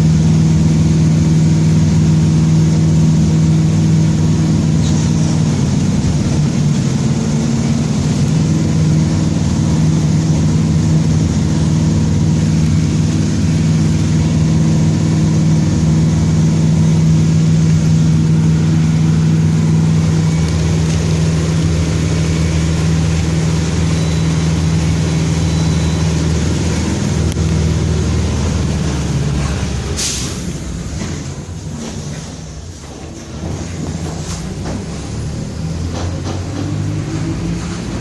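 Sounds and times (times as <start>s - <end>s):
bus engine drone: 0.0s - 38.0s
air brakes hissing: 29.8s - 31.2s.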